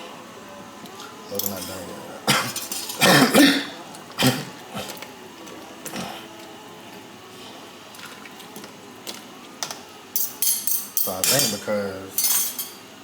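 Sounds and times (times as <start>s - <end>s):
cookware clattering: 2.4s - 3.4s, 9.6s - 12.8s.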